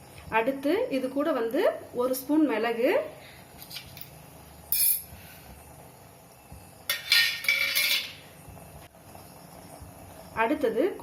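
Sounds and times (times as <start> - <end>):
metal spoon clinking on steel: 4.7 - 5.1.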